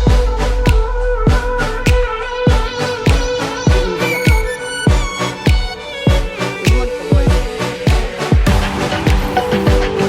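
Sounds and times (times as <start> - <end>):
deep kick drum: 0.0 - 10.0
electronic beat: 0.0 - 10.0
synth tones and melody: 0.0 - 10.0.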